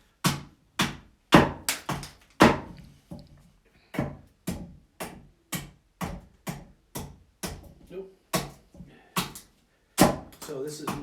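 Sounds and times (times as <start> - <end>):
axe chopping wood: 0.2 - 2.8, 8.4 - 8.6, 9.2 - 11.0.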